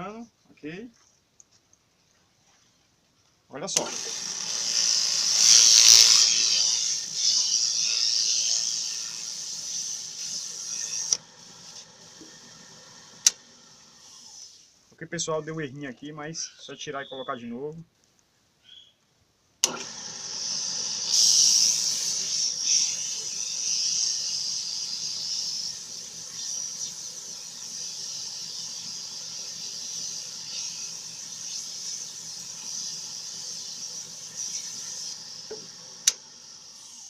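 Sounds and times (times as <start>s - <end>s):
sanding machine humming: 3.8s - 14.6s, 19.6s - 37.0s
sanding hiss: 3.9s - 14.8s, 19.8s - 37.0s.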